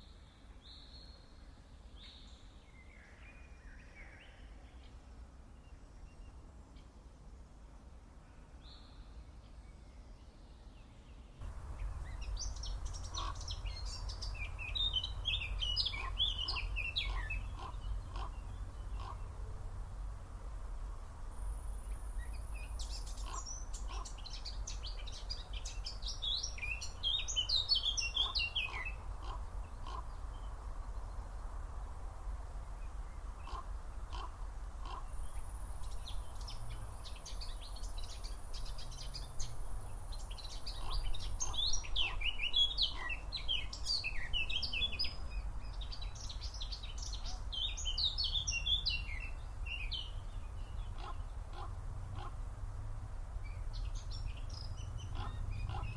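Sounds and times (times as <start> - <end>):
songbird singing: 0.0 - 7.6, 8.2 - 55.9
steady low rumble: 11.4 - 27.2.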